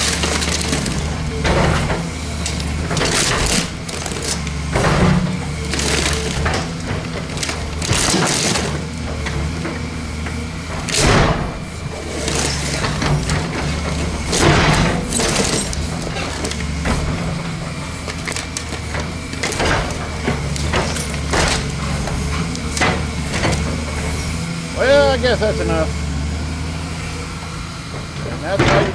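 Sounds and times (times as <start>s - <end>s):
sheet metal and plastic crunching: 0.0s - 25.6s
excavator diesel engine running: 0.0s - 28.9s.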